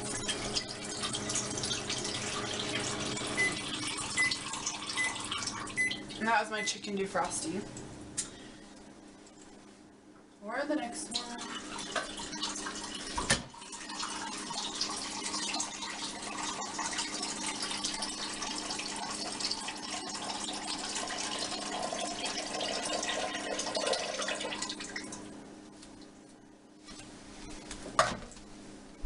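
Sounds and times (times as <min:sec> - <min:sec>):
water running from tap: 0:00.0 - 0:06.5, 0:10.8 - 0:25.3.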